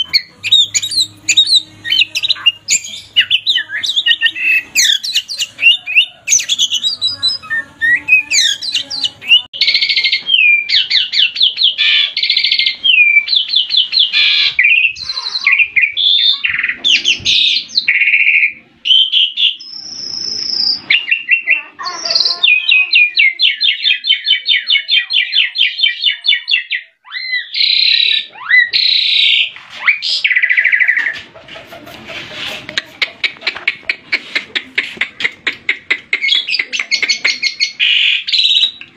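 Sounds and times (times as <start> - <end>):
songbird singing trills: 0.0 - 31.2.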